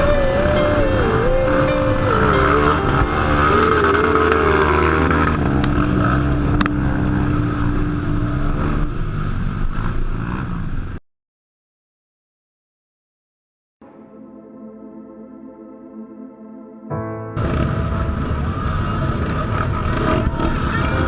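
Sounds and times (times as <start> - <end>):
off-road vehicle engine revving: 0.0 - 11.0, 17.4 - 21.0.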